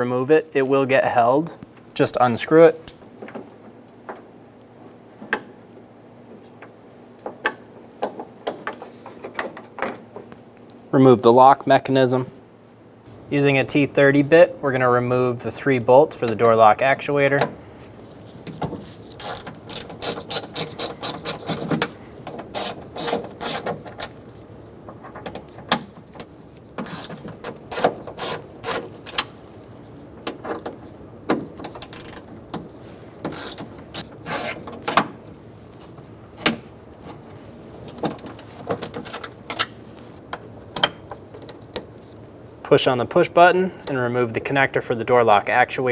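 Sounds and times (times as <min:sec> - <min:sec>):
ratchet clicking: 0:19.2 - 0:21.7, 0:33.3 - 0:35.0.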